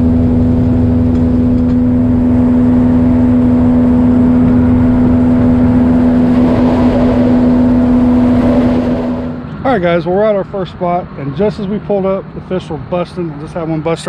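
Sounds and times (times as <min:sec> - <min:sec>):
outboard motor droning: 0:00.0 - 0:09.6.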